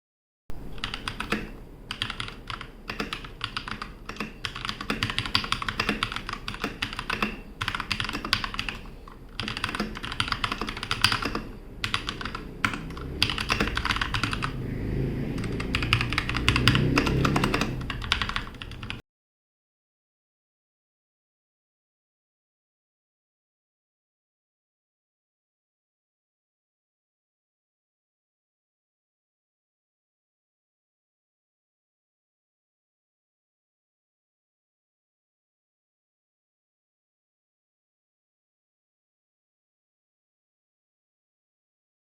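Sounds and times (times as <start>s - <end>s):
mechanical keyboard typing: 0.7s - 14.6s, 15.4s - 19.0s.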